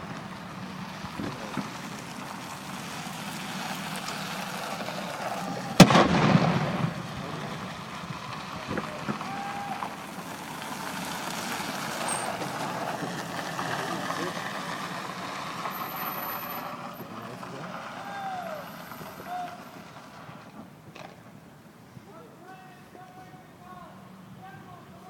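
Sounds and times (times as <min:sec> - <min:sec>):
cannon shot with echo: 0:05.8 - 0:07.6.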